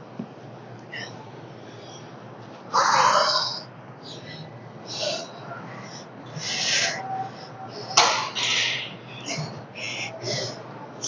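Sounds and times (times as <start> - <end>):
heavy hissing exhales: 7.9 - 10.6.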